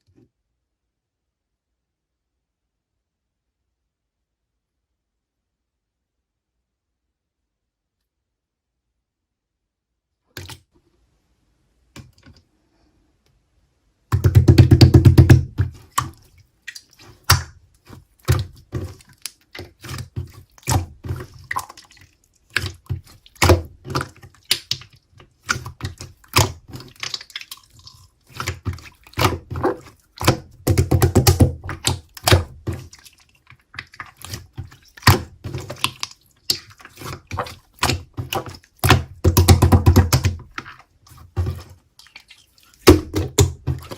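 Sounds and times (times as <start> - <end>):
slime squelching: 14.1 - 43.9.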